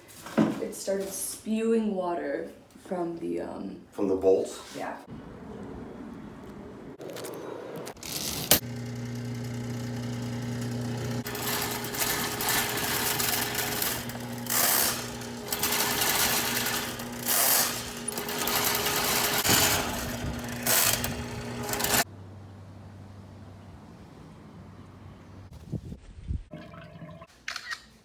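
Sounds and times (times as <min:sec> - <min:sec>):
spinning cable rattling: 0:08.0 - 0:22.0
drain-cleaning machine motor humming: 0:08.6 - 0:22.1.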